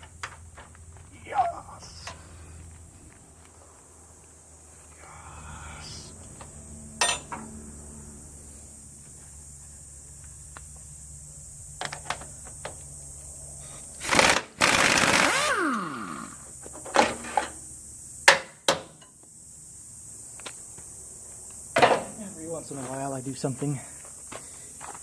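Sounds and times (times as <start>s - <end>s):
power tool whining: 13.6s - 16.5s.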